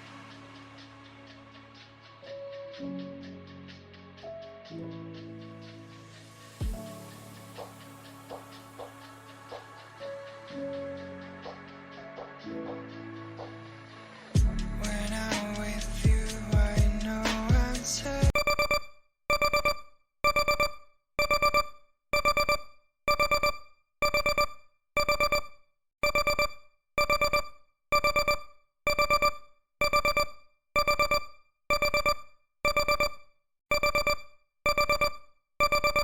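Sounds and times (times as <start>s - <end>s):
timer alarm beeping: 18.3s - 36.0s.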